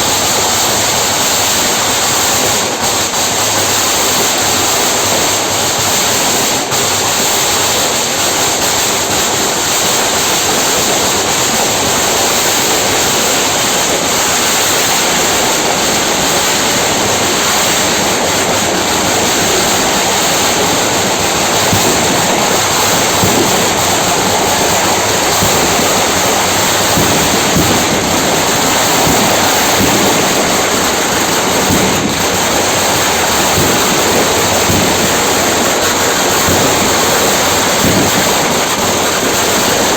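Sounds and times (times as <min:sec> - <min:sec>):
loud hissing noise: 0:00.0 - 0:39.9.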